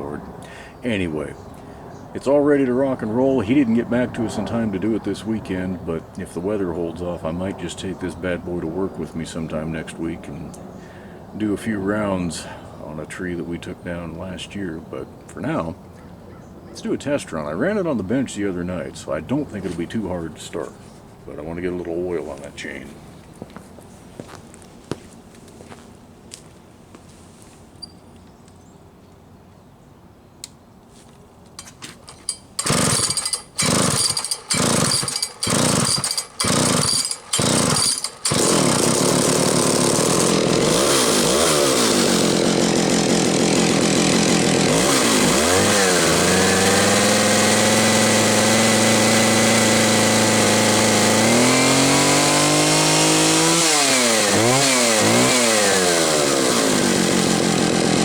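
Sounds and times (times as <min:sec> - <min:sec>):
chainsaw firing bursts: 0:32.0 - 0:58.0
chainsaw running and revving: 0:32.2 - 0:58.0.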